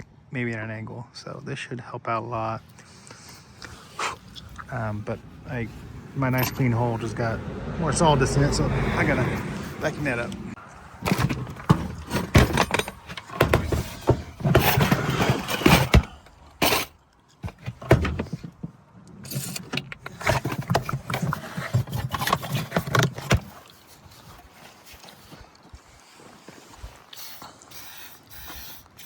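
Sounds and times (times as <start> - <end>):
rough rustling and scraping: 2.7 - 7.4, 8.0 - 29.0
tools knocking and clattering: 11.0 - 18.7.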